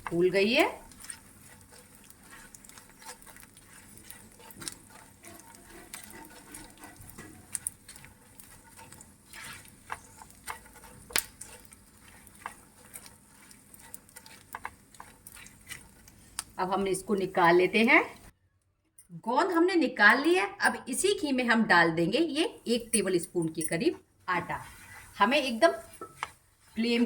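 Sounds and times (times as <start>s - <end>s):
gum frying in hot oil: 0.0s - 18.4s, 24.3s - 27.0s
small crackles and clicks: 0.8s - 16.6s.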